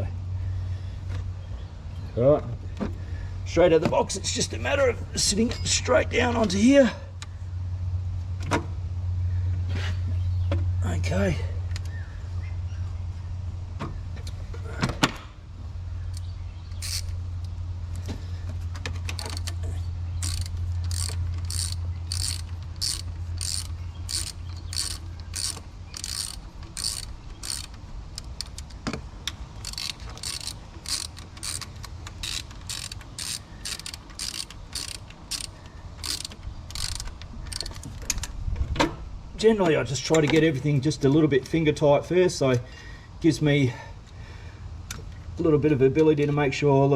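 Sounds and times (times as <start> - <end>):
ratchet wrench clicking: 16.1 - 17.5, 19.1 - 28.8, 29.6 - 38.1.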